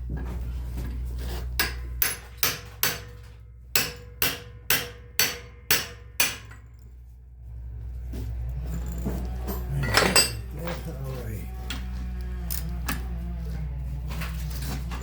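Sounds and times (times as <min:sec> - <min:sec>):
hammer striking steel: 0:01.6 - 0:06.7, 0:09.8 - 0:10.5.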